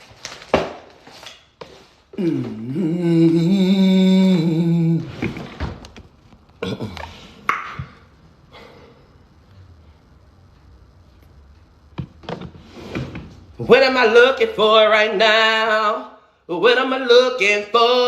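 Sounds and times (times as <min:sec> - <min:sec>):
person humming a long note: 0:02.2 - 0:05.3
knocks and handling noises: 0:11.9 - 0:13.4.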